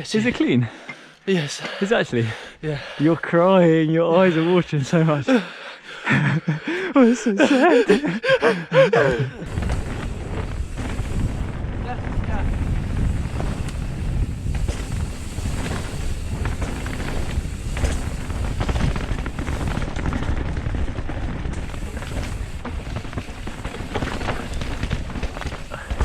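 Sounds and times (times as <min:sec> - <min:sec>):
low rumble: 0:09.3 - 0:26.0
wind buffeting microphone: 0:09.4 - 0:26.0
bike knocks and rattles: 0:09.5 - 0:26.0.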